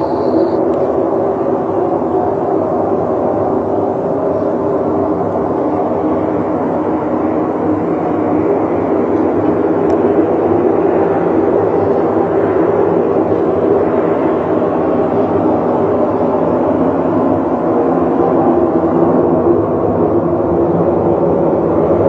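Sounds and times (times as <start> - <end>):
metallic tones droning: 0.0 - 0.6.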